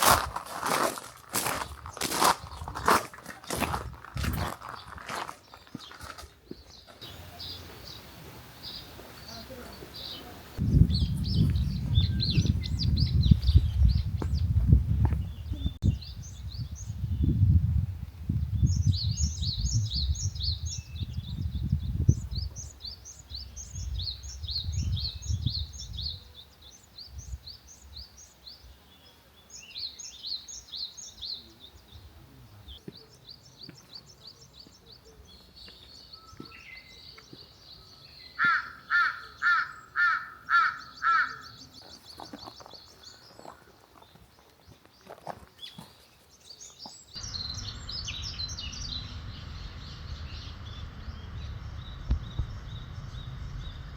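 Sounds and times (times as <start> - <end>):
birds chirping and trilling: 0.6 - 17.5, 18.4 - 53.9
loud bird calls: 29.6 - 44.2, 46.6 - 53.9
low rumble: 47.2 - 53.9.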